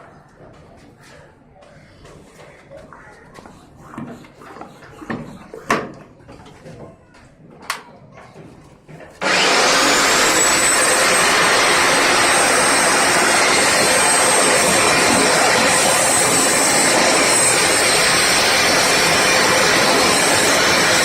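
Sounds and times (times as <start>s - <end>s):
core cutting machine motor whine: 9.2s - 21.0s.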